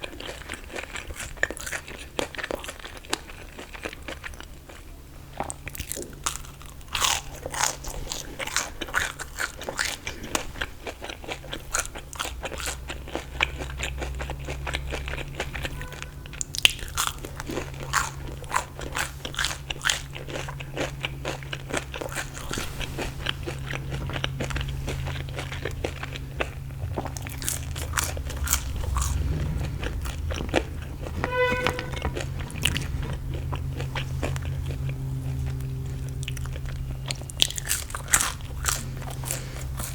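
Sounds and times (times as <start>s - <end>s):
crunching and chewing fried food: 0.0s - 39.9s
low hum: 15.1s - 39.9s.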